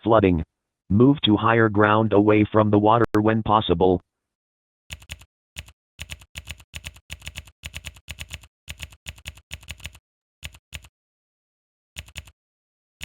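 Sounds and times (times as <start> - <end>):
typing on computer keyboard: 4.9 - 10.9, 12.0 - 12.4.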